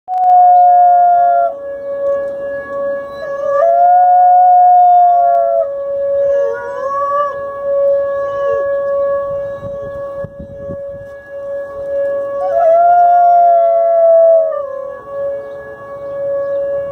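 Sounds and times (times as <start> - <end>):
dog howling: 0.1 - 1.6, 2.7 - 9.6, 12.2 - 16.9.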